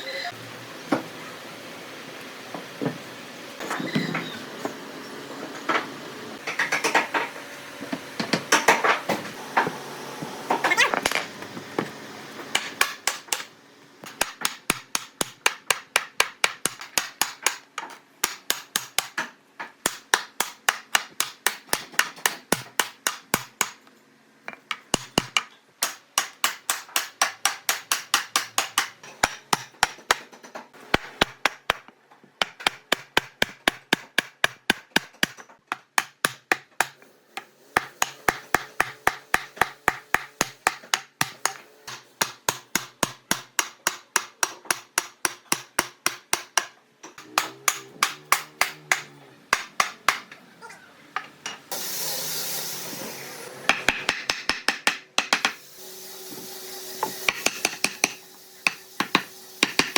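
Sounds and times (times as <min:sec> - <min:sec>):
rapid hammering on wood: 0:12.5 - 0:23.8, 0:24.7 - 0:30.3, 0:30.9 - 0:50.3, 0:53.7 - 0:55.6, 0:57.3 - 0:59.9.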